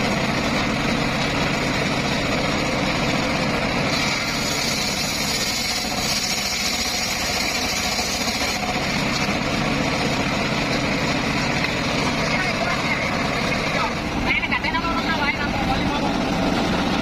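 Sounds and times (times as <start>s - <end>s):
circular sawmill engine running: 0.0s - 17.0s
saw hiss: 3.8s - 9.6s.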